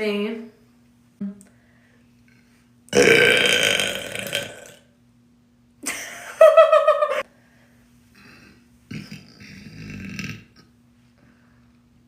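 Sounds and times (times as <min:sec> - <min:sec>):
woman burping: 0:02.9 - 0:04.8.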